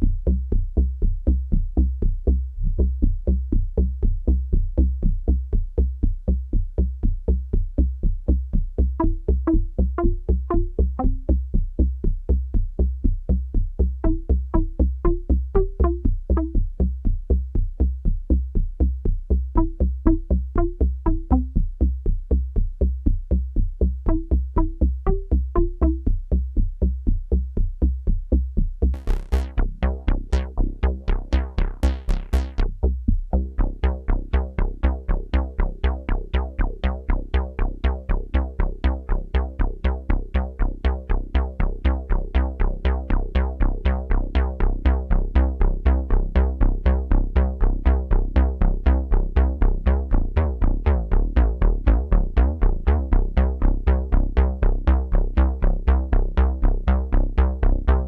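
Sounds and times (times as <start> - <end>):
synthesizer low pulse: 28.9 - 58.0
bright filter sweeps: 29.0 - 32.6
synthesizer sustained chord: 29.0 - 32.6.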